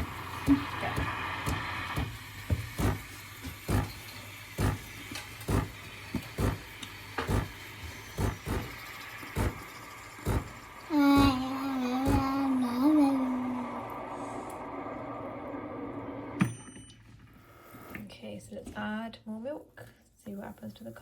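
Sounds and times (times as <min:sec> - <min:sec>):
machine hum: 0:00.0 - 0:18.0
sharp knocks and clicks: 0:00.4 - 0:04.0, 0:04.6 - 0:11.4.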